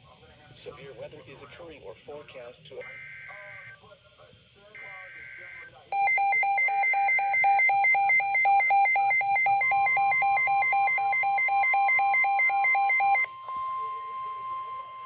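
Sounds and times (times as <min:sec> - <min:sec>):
electronic two-tone alert signal: 0:05.2 - 0:15.0.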